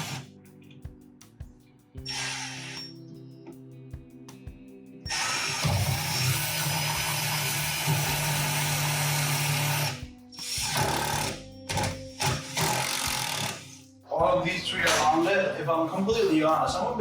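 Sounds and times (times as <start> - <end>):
cordless power driver running: 0.0 - 0.2, 5.1 - 13.8.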